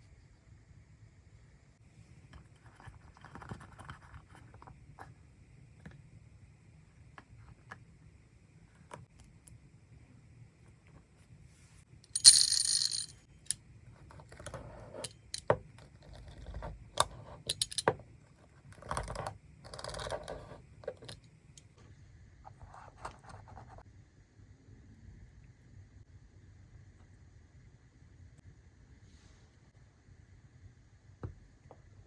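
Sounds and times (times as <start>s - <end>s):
tool clinking on container: 12.2s - 13.2s.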